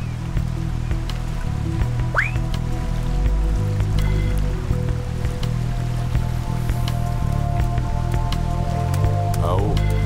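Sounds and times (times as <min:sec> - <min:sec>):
background music with bass line: 0:00.0 - 0:10.0.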